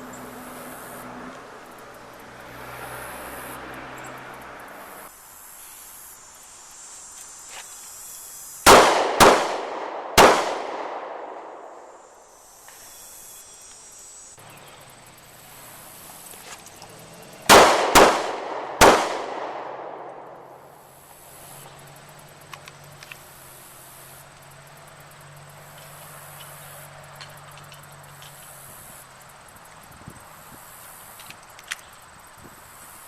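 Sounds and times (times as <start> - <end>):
handgun shots echoing: 8.7 - 11.8, 17.5 - 20.5.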